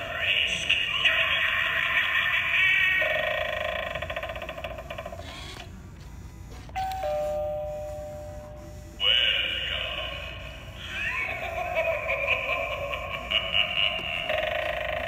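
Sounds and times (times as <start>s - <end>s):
two-note doorbell chime: 6.8s - 8.6s.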